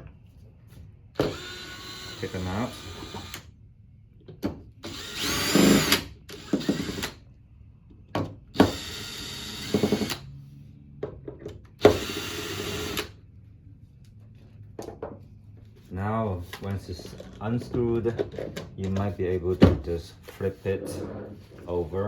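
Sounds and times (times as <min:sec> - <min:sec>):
electric screwdriver whirring: 0:01.2 - 0:03.5, 0:04.8 - 0:07.2, 0:08.6 - 0:10.3, 0:11.8 - 0:13.2.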